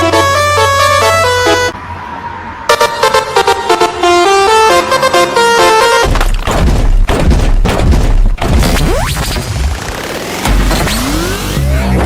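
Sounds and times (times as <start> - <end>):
musical bus horn melody: 0.0 - 1.8, 2.7 - 6.1.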